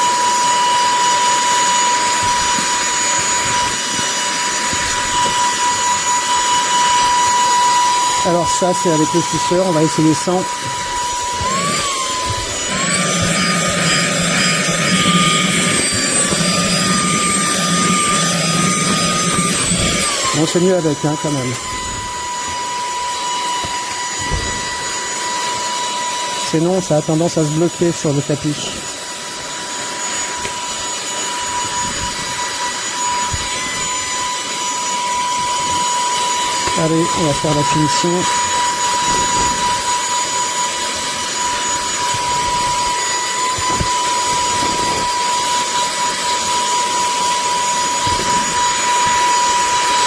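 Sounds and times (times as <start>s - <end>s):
handheld vacuum cleaner whining: 0.0s - 50.0s.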